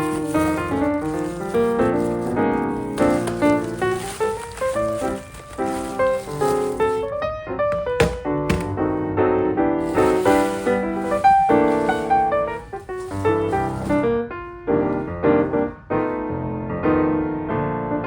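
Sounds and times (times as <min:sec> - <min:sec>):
piano music: 0:00.0 - 0:18.0.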